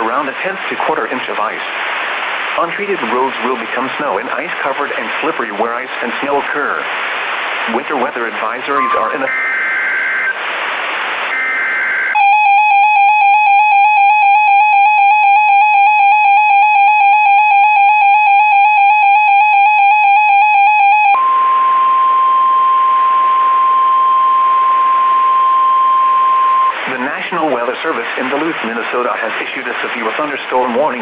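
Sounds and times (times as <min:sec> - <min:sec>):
harsh pulsing alarm beep: 0:11.4 - 0:26.8
steady warning alarm tone: 0:11.4 - 0:26.8.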